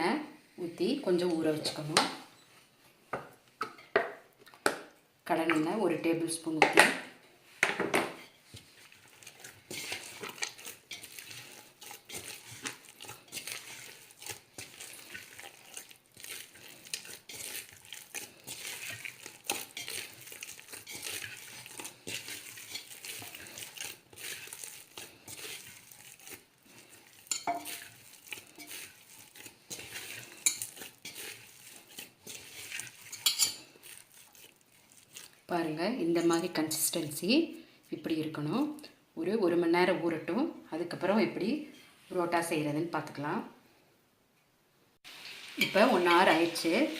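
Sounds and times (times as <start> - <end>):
hands kneading dough: 8.4 - 35.5.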